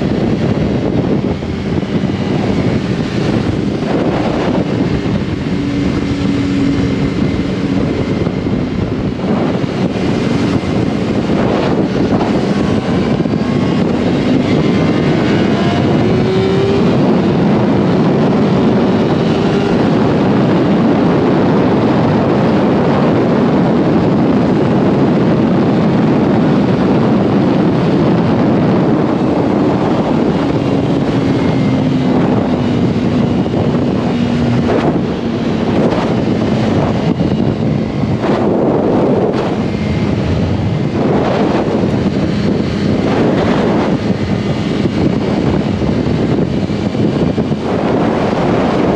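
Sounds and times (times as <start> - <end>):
motorcycle engine at speed: 0.0 - 48.9
wind noise on microphone: 0.0 - 48.9.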